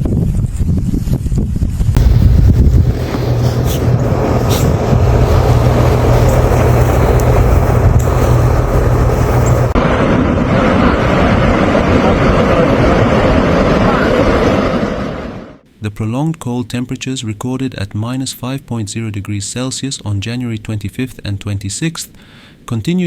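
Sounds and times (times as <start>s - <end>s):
vehicle running rumble: 2.0s - 10.8s.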